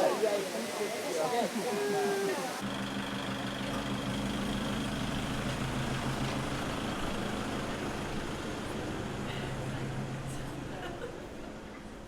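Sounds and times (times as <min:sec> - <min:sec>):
vehicle engine running: 0:02.6 - 0:10.4.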